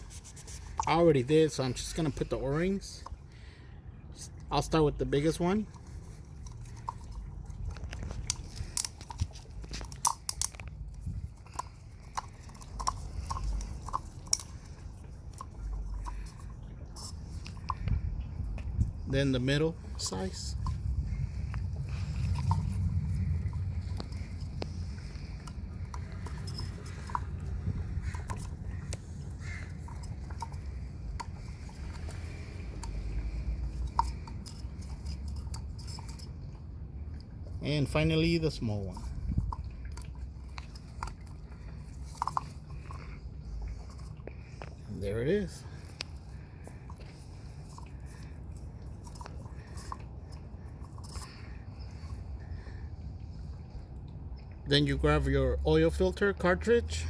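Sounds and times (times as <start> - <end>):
low steady rumble: 0.0 - 57.0
small clicks and handling noise: 5.8 - 18.8.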